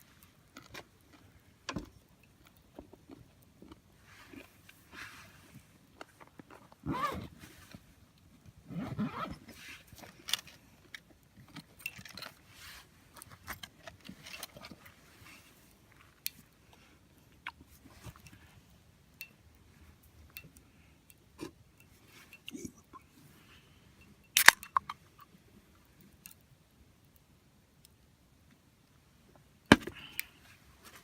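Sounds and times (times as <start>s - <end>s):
wood fire crackling: 0.0s - 6.2s
rustle or clatter: 8.7s - 18.6s.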